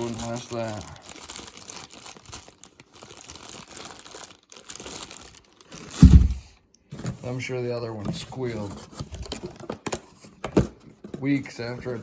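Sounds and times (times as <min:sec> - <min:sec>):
packaging crinkling: 0:00.0 - 0:06.6
heavy low thump: 0:06.0 - 0:06.5.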